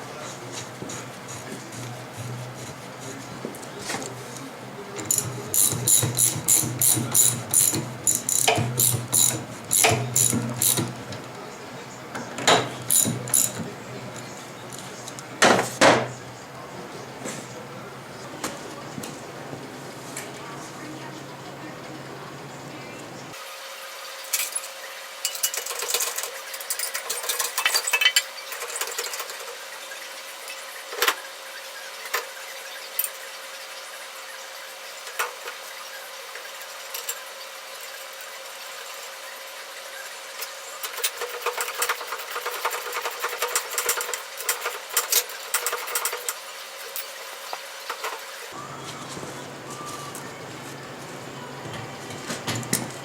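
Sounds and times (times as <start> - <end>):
metal parts clicking and clattering: 5.0 - 10.9, 24.3 - 29.6, 40.8 - 47.2.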